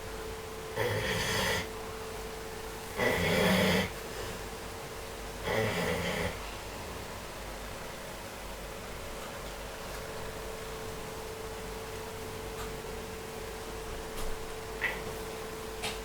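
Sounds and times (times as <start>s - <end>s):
person snoring: 0.8s - 1.7s, 3.0s - 3.9s.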